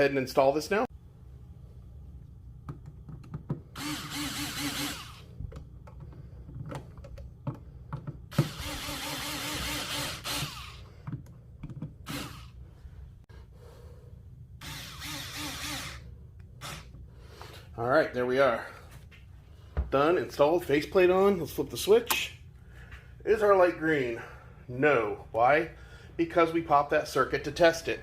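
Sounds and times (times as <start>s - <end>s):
handling clicks and taps: 2.6s - 3.6s, 5.4s - 8.2s, 11.0s - 12.0s
cordless drill whirring: 3.7s - 5.3s, 8.3s - 10.9s, 12.0s - 12.6s, 14.6s - 16.0s, 16.6s - 16.9s.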